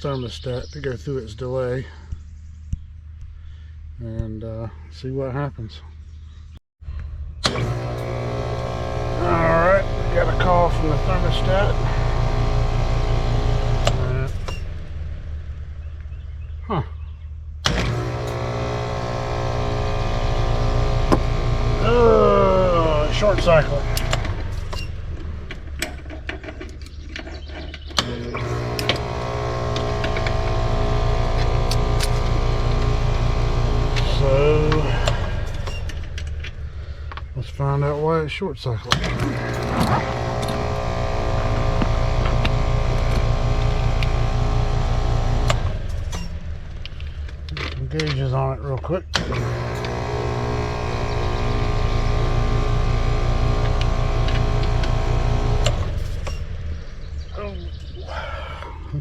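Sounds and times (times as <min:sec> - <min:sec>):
contactor click: 0:07.4 - 0:15.0, 0:17.6 - 0:37.3, 0:38.9 - 0:48.2, 0:49.1 - 0:56.8
air conditioner humming: 0:07.7 - 0:14.5, 0:18.3 - 0:25.8, 0:28.0 - 0:46.4.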